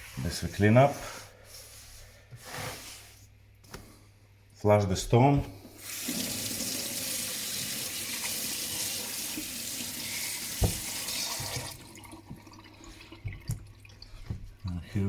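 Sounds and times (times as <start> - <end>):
tap water running into sink: 5.8 - 14.6
knock: 10.6 - 10.9.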